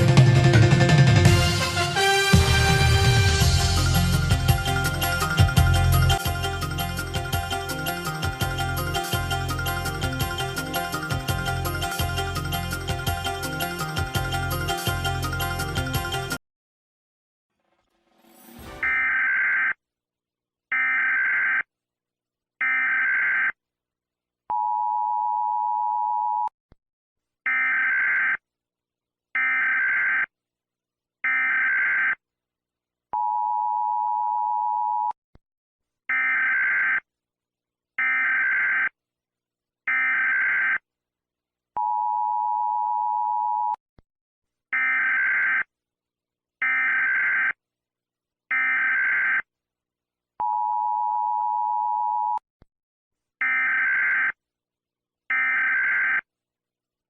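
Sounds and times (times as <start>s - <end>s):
two-tone attention beep: 18.6s - 19.3s.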